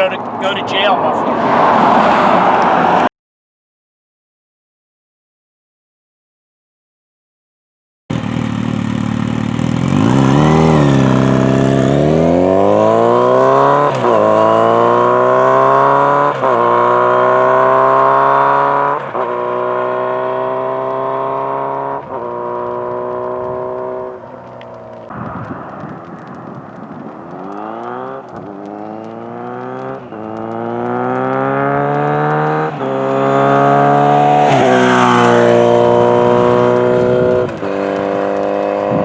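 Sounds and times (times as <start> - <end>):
motorcycle engine revving and upshifting: 8.1 - 25.1, 27.3 - 39.0.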